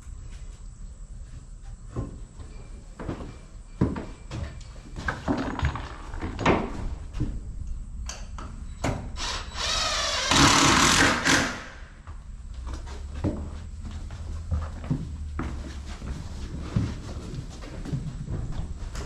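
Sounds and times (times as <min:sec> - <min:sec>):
drill whining: 0:09.2 - 0:11.8.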